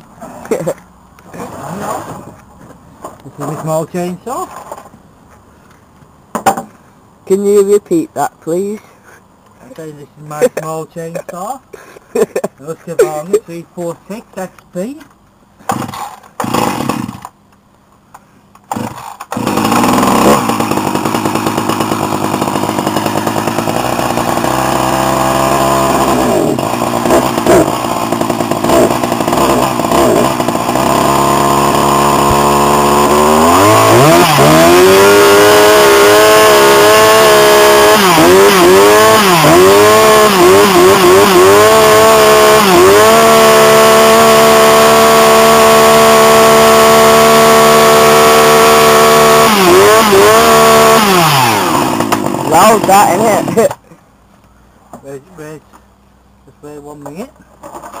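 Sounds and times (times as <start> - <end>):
chainsaw engine revving: 15.7 - 17.4, 18.7 - 53.8.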